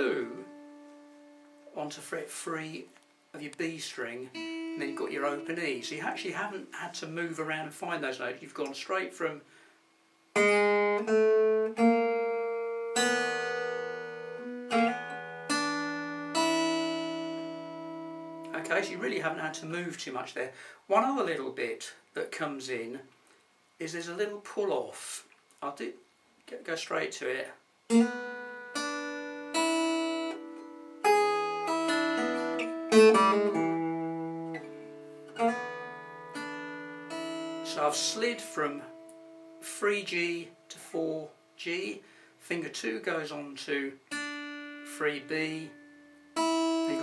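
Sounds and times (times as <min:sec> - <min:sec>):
slow blues guitar notes: 0:00.0 - 0:01.8, 0:04.3 - 0:06.0, 0:10.3 - 0:19.4, 0:27.9 - 0:41.4, 0:44.0 - 0:47.0.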